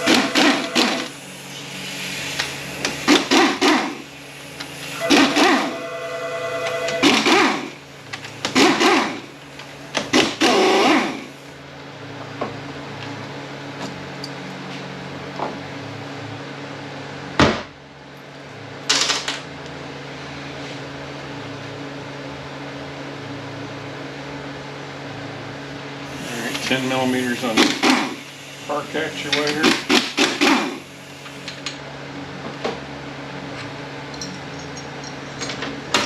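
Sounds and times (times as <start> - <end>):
steady shop hum: 0.0 - 36.0
rattling hand tool bursts: 7.0 - 11.3.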